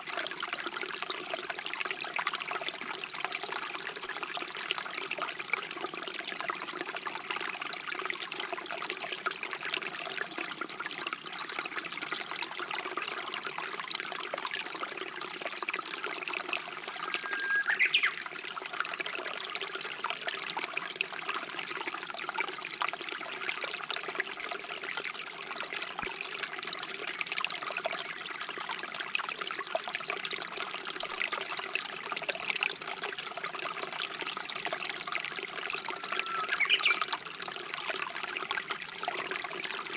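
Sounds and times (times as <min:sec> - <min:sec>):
stream water trickling: 0:00.0 - 0:39.9
bird whistle: 0:17.2 - 0:18.2, 0:36.0 - 0:37.0.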